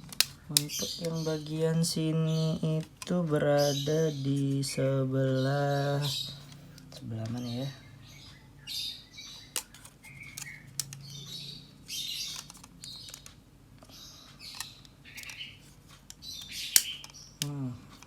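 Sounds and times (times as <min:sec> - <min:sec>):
plastic clicks: 0:00.0 - 0:05.4, 0:09.2 - 0:11.4, 0:12.0 - 0:18.0.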